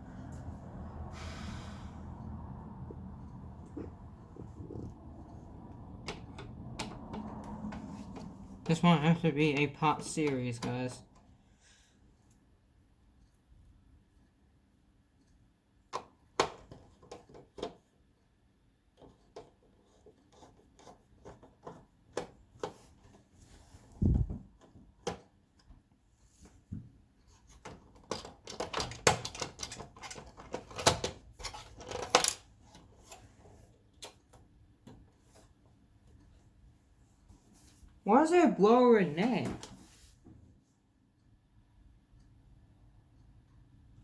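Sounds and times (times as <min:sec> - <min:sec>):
plastic parts clicking and knocking: 0:15.9 - 0:17.9, 0:26.7 - 0:33.2.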